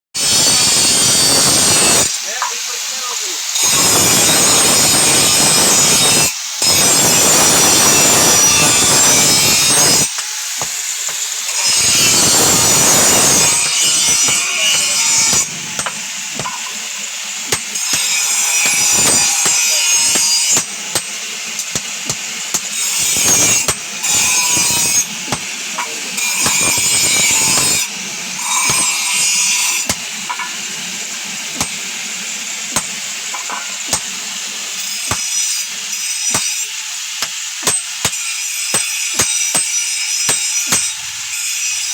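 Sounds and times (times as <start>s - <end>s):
power tool working steel: 0.2s - 41.9s
clicks and knocks of metal handling: 33.3s - 33.8s.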